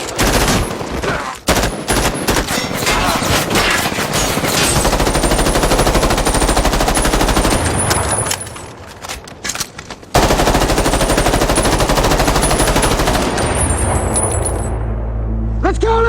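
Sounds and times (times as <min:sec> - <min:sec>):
automatic rifle fire: 0:01.5 - 0:08.6, 0:10.1 - 0:14.7.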